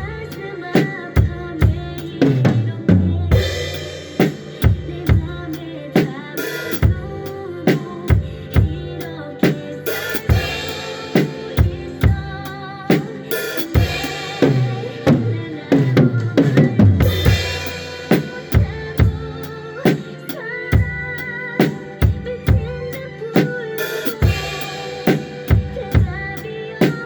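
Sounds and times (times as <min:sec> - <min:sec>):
ballad backing track: 0:00.0 - 0:27.0
person singing: 0:00.0 - 0:27.0.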